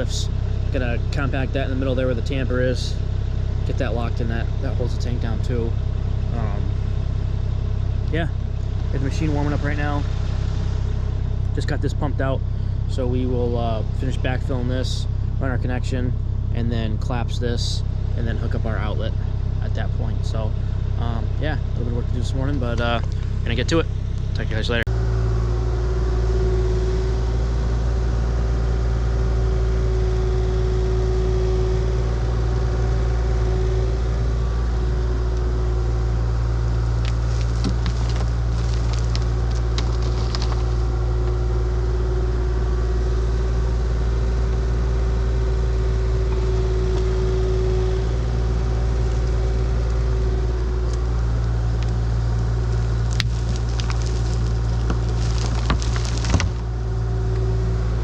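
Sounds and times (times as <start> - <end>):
diesel engine idling: 0.0 - 58.0.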